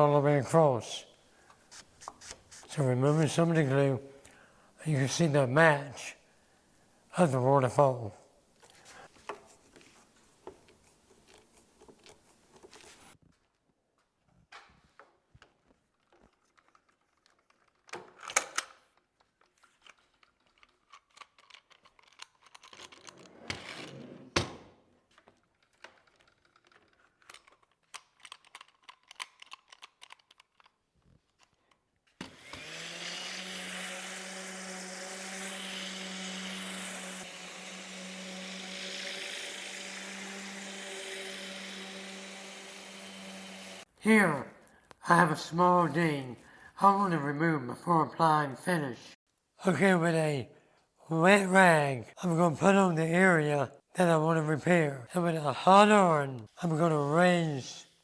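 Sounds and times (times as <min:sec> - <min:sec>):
power tool motor humming: 0:32.2 - 0:43.9.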